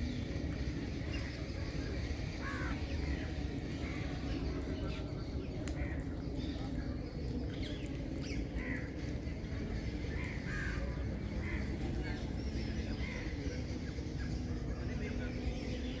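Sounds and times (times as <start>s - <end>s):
birds harsh calls: 0.0s - 6.6s.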